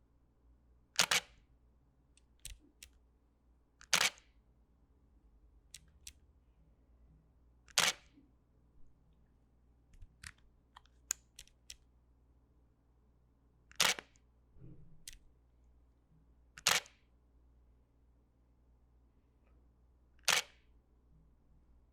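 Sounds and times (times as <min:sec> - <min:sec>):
camera shutter clicks: 0:01.0 - 0:01.3, 0:07.7 - 0:08.0, 0:13.8 - 0:14.0, 0:20.3 - 0:20.5.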